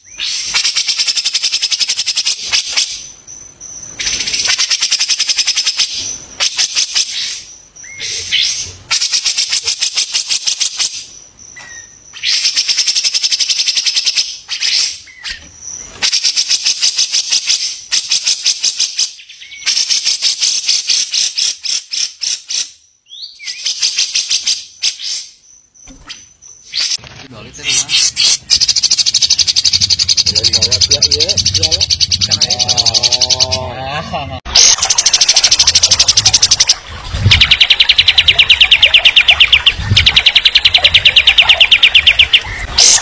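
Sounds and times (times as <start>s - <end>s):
bird singing fast rattling notes: 0.0s - 22.7s, 23.5s - 33.5s, 34.6s - 43.0s
bird whistles: 37.3s - 43.0s.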